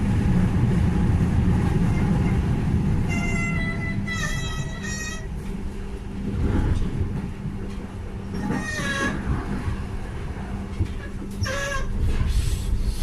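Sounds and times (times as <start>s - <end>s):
rumble and hum of moving train: 0.0s - 13.0s
high-pitched train squeals: 3.0s - 5.4s, 8.2s - 9.5s, 11.3s - 13.0s.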